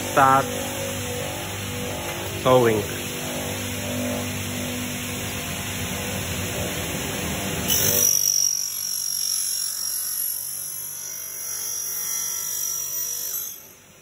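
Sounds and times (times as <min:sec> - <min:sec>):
saw blade whine: 0:00.0 - 0:14.0
table saw cutting: 0:00.0 - 0:14.0.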